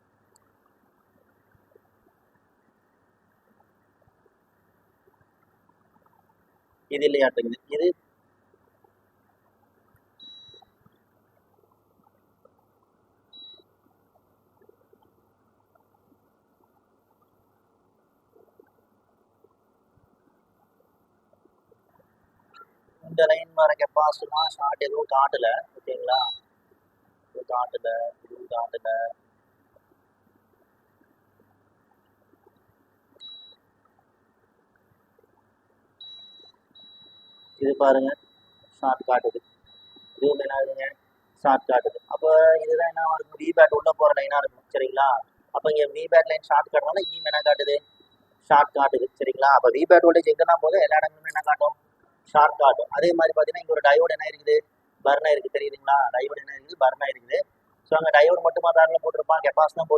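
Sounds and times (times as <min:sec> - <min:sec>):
faint probe clicks: 0:00.3 - 0:02.5
multimeter beeps: 0:10.2 - 0:11.0, 0:13.3 - 0:13.8, 0:23.0 - 0:26.5, 0:33.2 - 0:33.6, 0:36.0 - 0:51.6.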